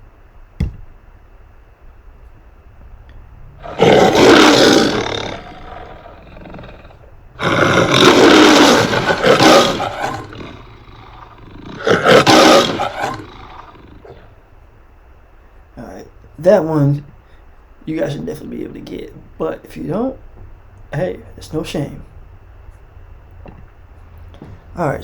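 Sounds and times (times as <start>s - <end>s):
lion roaring: 3.6s - 14.4s.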